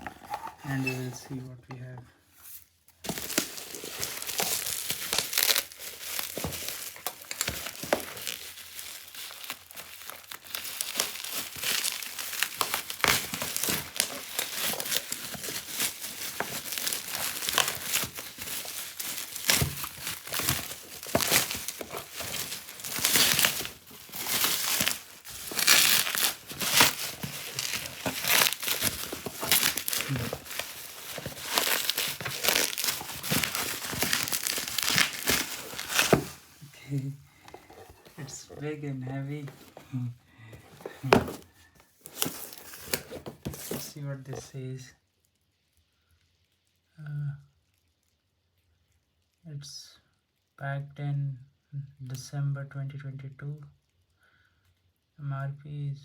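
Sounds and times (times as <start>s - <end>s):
bubble wrap crinkling: 2.4s - 44.6s.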